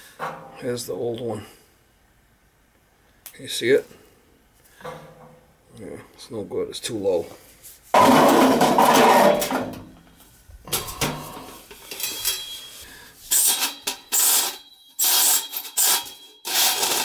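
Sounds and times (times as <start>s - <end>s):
metal parts scraping and clattering: 8.0s - 9.9s, 10.8s - 17.0s.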